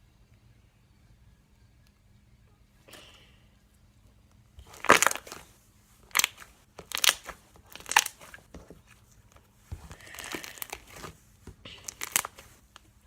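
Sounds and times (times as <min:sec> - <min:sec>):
slime crackling when squeezed: 0:04.6 - 0:05.5, 0:06.1 - 0:08.3, 0:10.0 - 0:11.0, 0:11.9 - 0:12.4.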